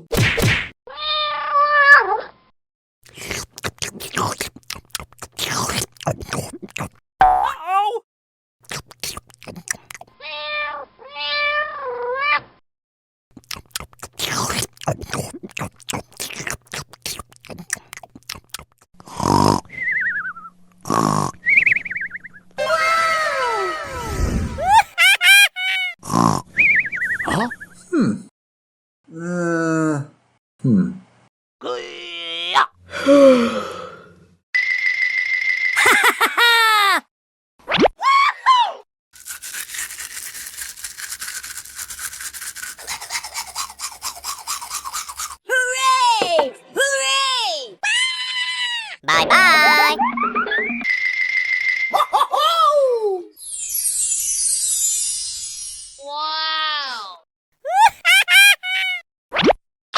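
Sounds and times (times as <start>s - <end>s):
comic cartoon snore: 19.0s - 19.8s, 20.8s - 21.4s, 26.0s - 26.5s, 29.2s - 31.1s, 32.9s - 34.4s
fast repeated scraping strokes: 39.2s - 45.4s
squeaky cartoon voice call: 48.8s - 50.0s.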